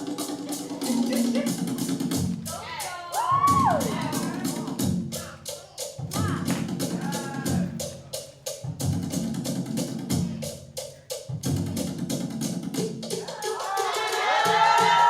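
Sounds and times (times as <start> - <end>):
music with percussive beat: 0.0 - 15.0
heavy bass line: 6.0 - 8.1.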